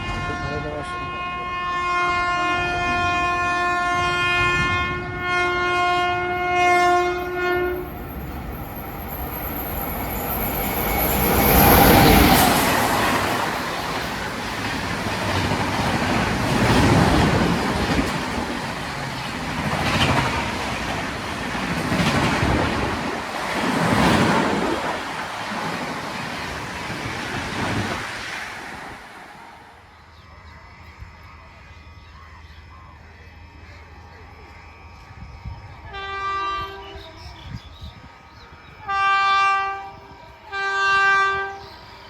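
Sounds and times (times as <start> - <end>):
locomotive horn: 0.0 - 8.0, 35.0 - 37.2, 38.7 - 41.8
train running past: 0.0 - 42.0
train wheels clattering on rails: 9.9 - 29.1.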